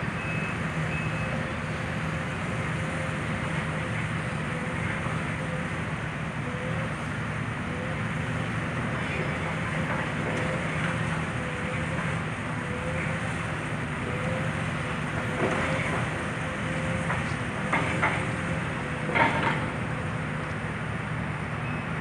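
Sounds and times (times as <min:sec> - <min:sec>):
heavy machine engine under load: 0:00.0 - 0:22.0.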